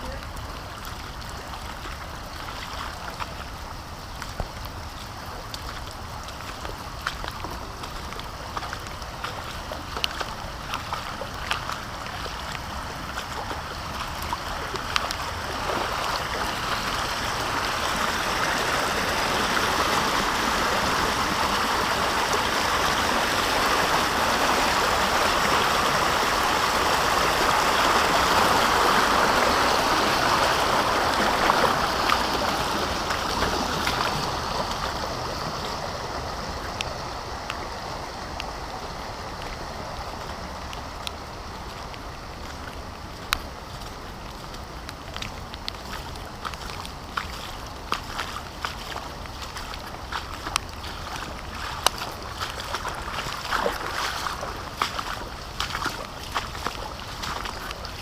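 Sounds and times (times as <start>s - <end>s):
floodwater rushing: 0.0s - 58.0s
light ticks: 5.5s - 11.8s, 40.2s - 49.8s, 50.4s - 50.8s.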